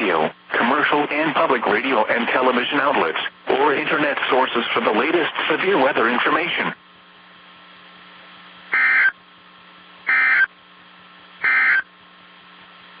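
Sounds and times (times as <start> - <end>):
steady hum and hiss: 0.0 - 13.0
buzzy digital data tones: 8.8 - 9.2, 10.1 - 10.5, 11.4 - 11.9.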